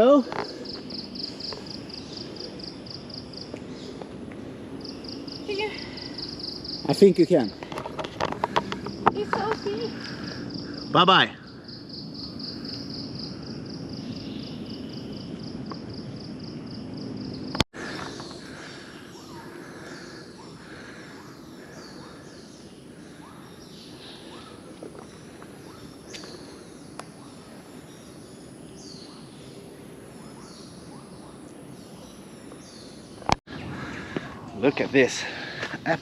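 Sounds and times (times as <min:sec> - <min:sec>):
high insect whine: 0:00.0 - 0:36.0
insect trilling: 0:00.0 - 0:36.0
falling bird calls: 0:17.8 - 0:36.0.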